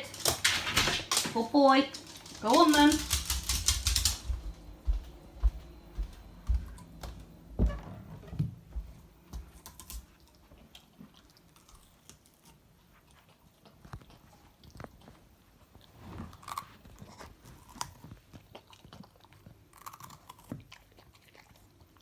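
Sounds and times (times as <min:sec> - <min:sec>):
dog claws clicking: 0:00.0 - 0:04.5.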